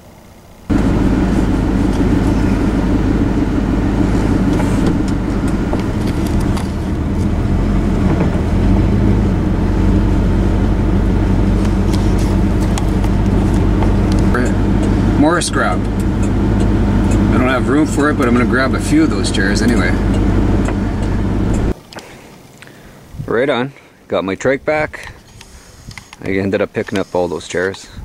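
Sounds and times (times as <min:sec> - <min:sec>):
truck engine and road noise: 0:00.0 - 0:21.8.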